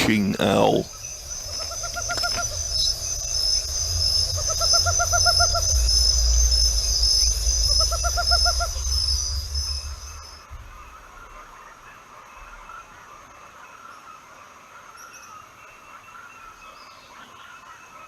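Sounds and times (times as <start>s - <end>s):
high insect drone: 0.1s - 16.8s
owl trilling hoots: 0.6s - 13.2s
low rumble: 0.8s - 11.4s.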